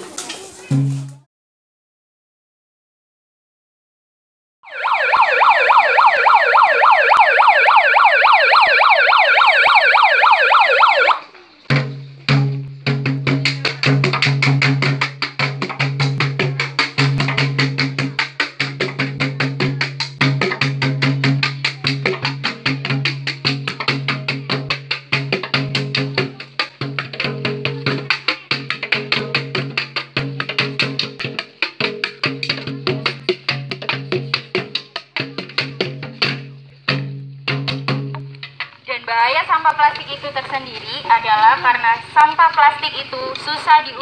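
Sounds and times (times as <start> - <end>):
music with clicking percussion beat: 0.7 - 1.2, 11.6 - 38.8
siren wailing in fast warble: 4.6 - 11.2.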